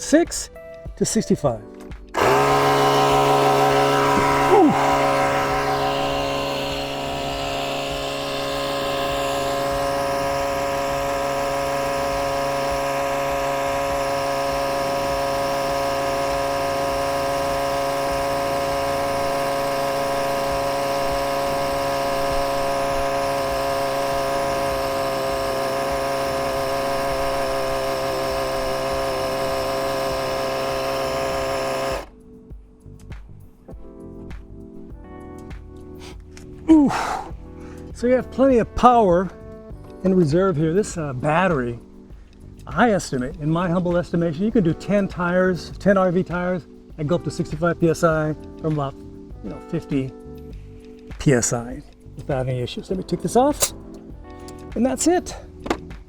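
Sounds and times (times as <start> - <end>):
air compressor motor whine: 2.1 - 32.3, 36.0 - 38.7, 53.0 - 56.0.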